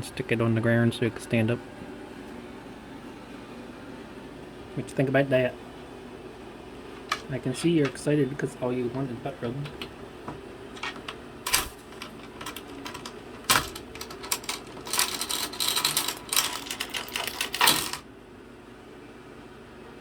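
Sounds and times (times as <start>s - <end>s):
lock clacking: 10.8s - 18.0s.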